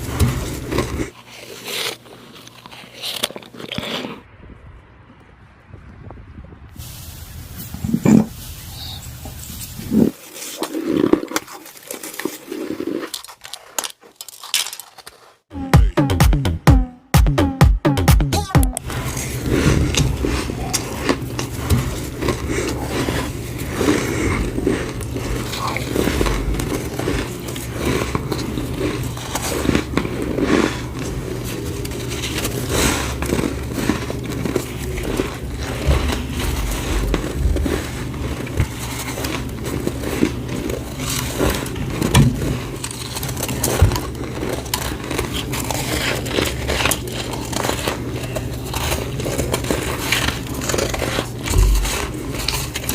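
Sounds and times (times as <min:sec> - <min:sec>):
chewing snow crunching: 0:00.0 - 0:04.3, 0:08.2 - 0:15.4, 0:18.8 - 0:52.9
low hum: 0:18.4 - 0:52.9.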